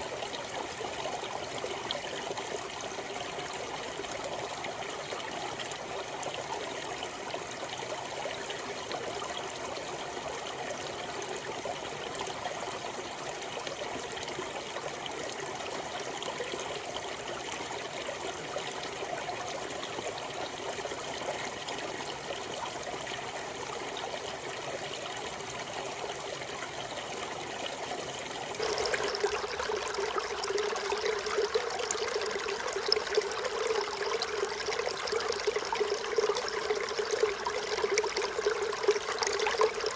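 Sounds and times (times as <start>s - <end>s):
close rush of water: 0.0s - 7.9s, 17.0s - 39.9s
stream running over rocks: 0.0s - 39.9s.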